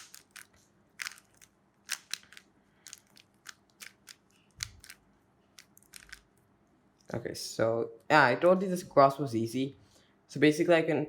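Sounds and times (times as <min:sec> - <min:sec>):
plastic puzzle cube clicks: 0:00.0 - 0:05.0, 0:05.6 - 0:06.2.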